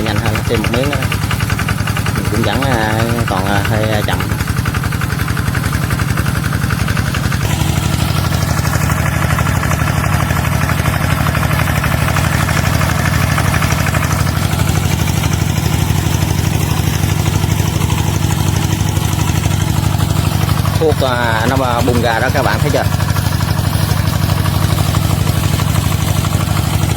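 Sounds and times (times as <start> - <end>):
small engine running: 0.0 - 26.9.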